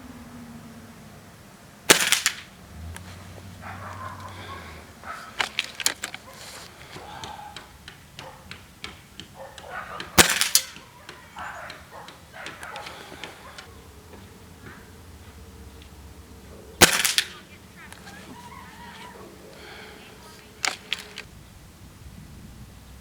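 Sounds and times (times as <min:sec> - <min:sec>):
air rifle firing: 0:01.8 - 0:03.0, 0:04.0 - 0:14.9, 0:16.7 - 0:21.3
metallic clicks and clacks: 0:05.2 - 0:13.7, 0:20.6 - 0:21.3.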